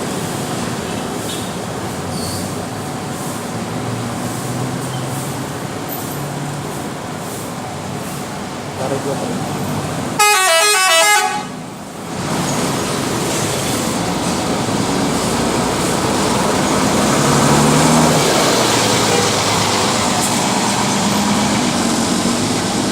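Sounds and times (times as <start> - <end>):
heavy vehicle engine running: 0.0 - 22.9
bus musical horn: 10.2 - 11.8.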